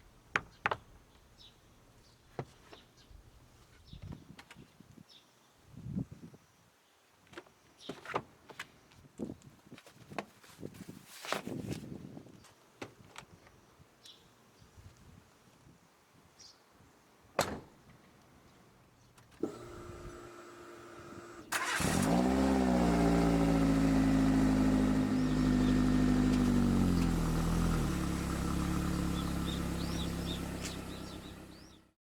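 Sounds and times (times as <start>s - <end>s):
thump and click: 17.4s - 17.7s
car engine starting and idling: 19.4s - 31.9s.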